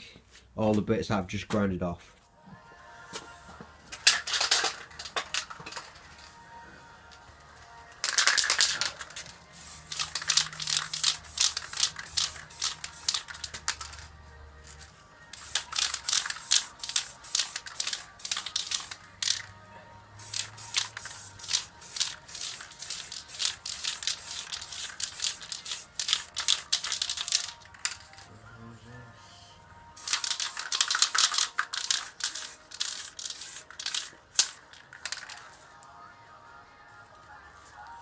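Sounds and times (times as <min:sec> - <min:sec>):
background music: 0:00.0 - 0:38.0
spray paint can hissing: 0:08.0 - 0:14.0, 0:15.3 - 0:19.5, 0:20.2 - 0:28.2, 0:30.0 - 0:35.4.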